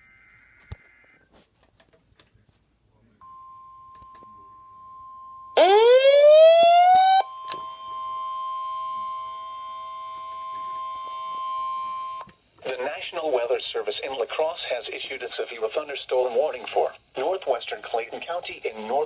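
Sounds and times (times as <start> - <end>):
rising siren-like wail: 5.6 - 7.3.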